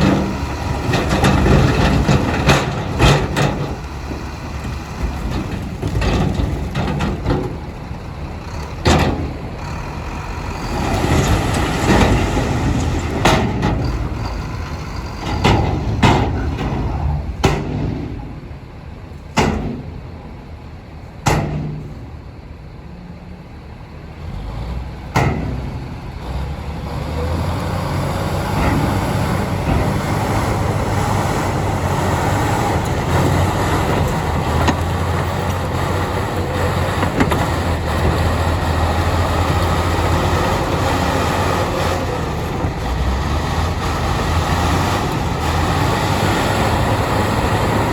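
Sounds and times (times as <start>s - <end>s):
metallic clanks and knocks: 0.0s - 7.7s, 8.8s - 9.6s, 11.0s - 18.6s, 19.3s - 20.1s
bulldozer diesel engine rumbling: 0.0s - 47.9s.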